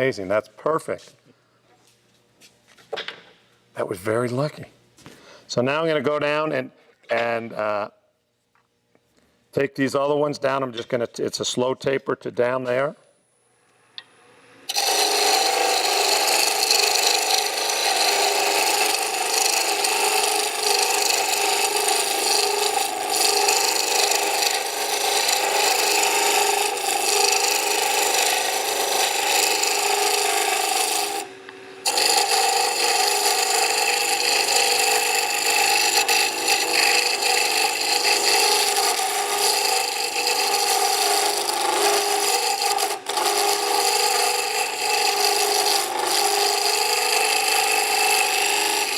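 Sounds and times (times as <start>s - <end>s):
wood lathe chisel cutting: 14.6s - 48.9s.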